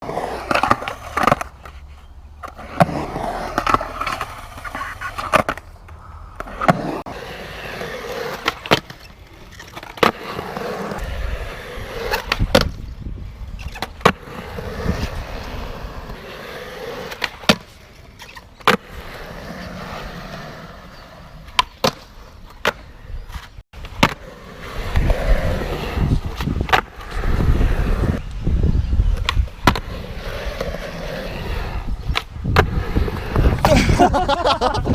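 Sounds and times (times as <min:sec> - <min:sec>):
skateboard tail clacking on ground: 0:00.0 - 0:13.0, 0:29.1 - 0:34.8
skateboard rolling on concrete: 0:00.0 - 0:34.9.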